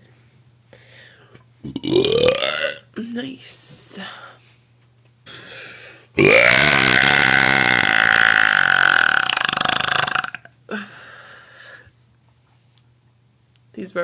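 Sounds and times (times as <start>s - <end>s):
woman belching loudly: 1.6s - 2.8s, 6.2s - 10.5s.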